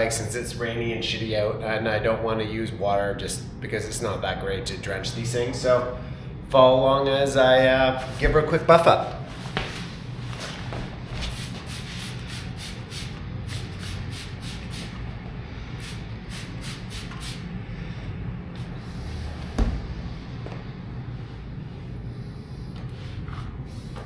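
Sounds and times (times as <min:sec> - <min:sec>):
spray bottle hissing: 0:11.3 - 0:15.0, 0:15.8 - 0:17.5
dull thump: 0:19.6 - 0:19.9.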